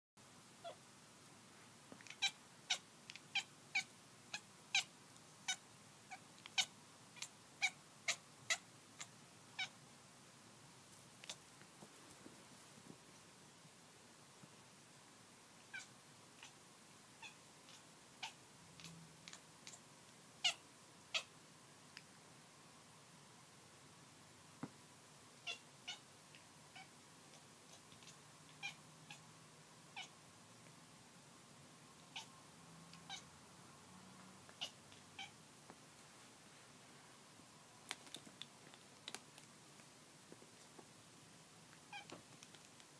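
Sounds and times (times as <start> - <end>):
kitten chirping: 2.1 - 8.6, 27.7 - 29.2, 32.1 - 32.3.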